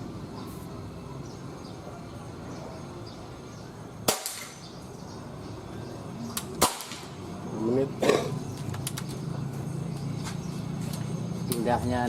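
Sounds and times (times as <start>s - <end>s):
air rifle shot with echo: 6.6s - 7.1s.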